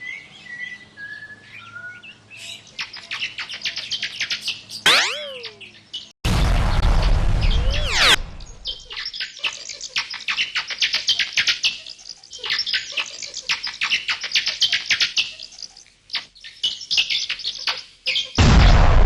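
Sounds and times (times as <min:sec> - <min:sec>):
birds chirping: 0:00.0 - 0:06.1, 0:06.8 - 0:18.4
sweep falling in pitch: 0:04.9 - 0:05.6, 0:07.4 - 0:08.2.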